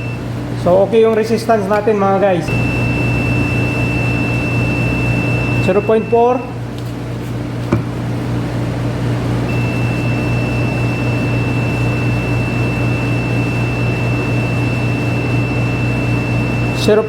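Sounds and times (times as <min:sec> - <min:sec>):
machine hum: 0:00.0 - 0:17.0
high-pitched tone: 0:02.5 - 0:06.6, 0:09.5 - 0:17.0.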